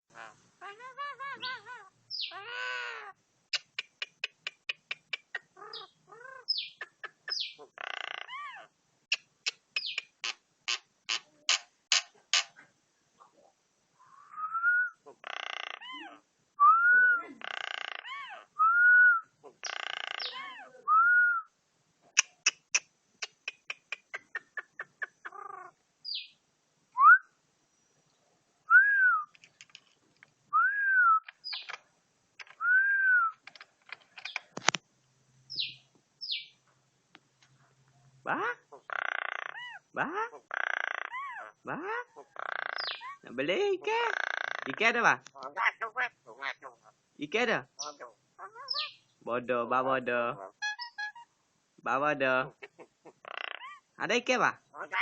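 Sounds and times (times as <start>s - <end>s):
bird squawking: 0.2s - 12.6s, 14.0s - 16.2s, 17.2s - 18.5s, 19.4s - 20.9s, 22.1s - 26.4s, 31.2s - 31.8s, 35.5s - 36.6s, 38.3s - 47.0s, 47.8s - 49.0s, 50.3s - 51.3s, 52.4s - 53.9s, 54.7s - 55.0s
bird whistling: 1.4s - 2.4s, 6.5s - 7.6s, 9.8s - 10.1s, 14.3s - 15.0s, 26.1s - 26.3s, 30.5s - 31.7s, 32.6s - 33.4s, 35.5s - 36.5s, 42.7s - 43.1s, 48.6s - 49.0s
bird clicking: 33.3s - 34.8s.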